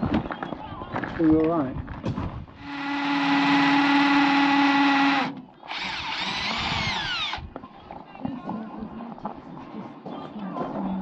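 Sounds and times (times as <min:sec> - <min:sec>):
power drill drilling masonry: 0:02.6 - 0:07.5.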